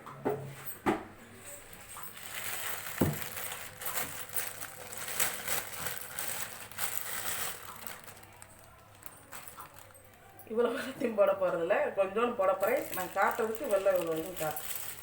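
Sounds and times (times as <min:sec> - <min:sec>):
crackly rustling with clicks: 0:01.6 - 0:10.4, 0:12.6 - 0:15.0.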